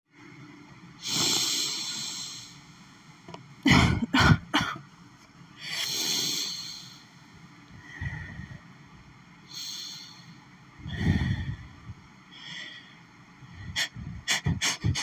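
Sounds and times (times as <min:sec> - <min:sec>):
woman sniffing: 0:01.0 - 0:02.6, 0:05.7 - 0:07.0
long breath in: 0:09.5 - 0:13.0.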